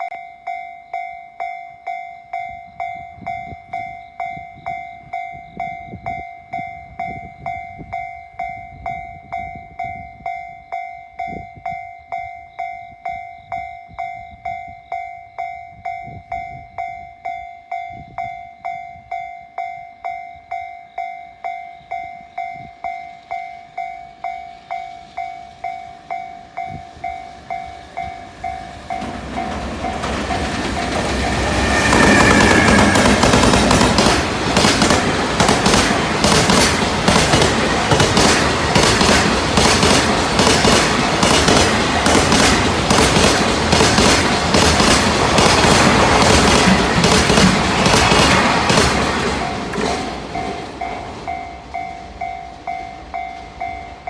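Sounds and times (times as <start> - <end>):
approaching freight train: 0.0 - 54.0
level crossing bell clanging: 16.9 - 54.0.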